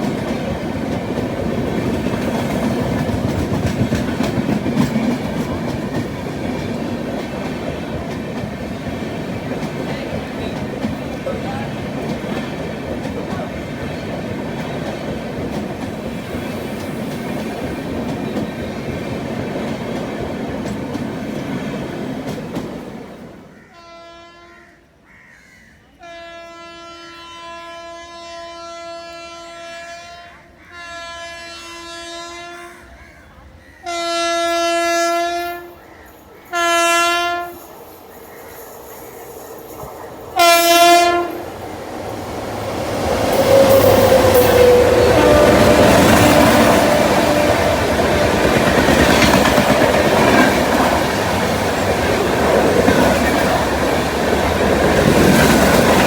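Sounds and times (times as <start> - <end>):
train wheels clattering over rails: 0.0 - 23.4, 38.0 - 56.0
locomotive horn blasts: 23.8 - 24.7, 26.0 - 32.8, 33.9 - 35.8, 36.5 - 37.6, 40.4 - 41.4, 43.4 - 48.6.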